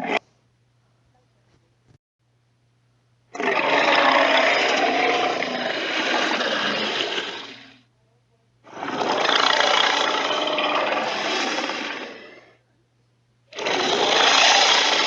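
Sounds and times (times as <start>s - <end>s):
harsh dinosaur roar: 0.0s - 0.2s, 3.4s - 7.8s, 8.7s - 12.5s, 13.5s - 15.0s.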